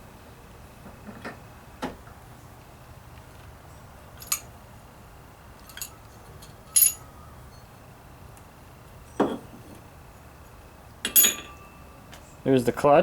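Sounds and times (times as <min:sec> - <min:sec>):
pliers clinking on metal: 0:04.2 - 0:04.5, 0:05.6 - 0:07.0, 0:11.1 - 0:11.7.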